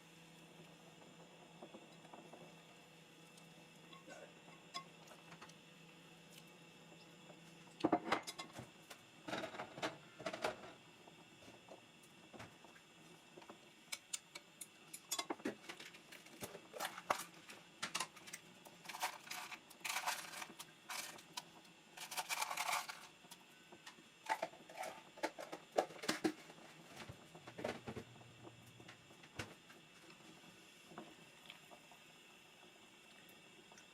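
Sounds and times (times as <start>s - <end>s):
utensils and dishes clicking: 14.0s - 15.4s
scraping or rustling: 22.0s - 23.1s.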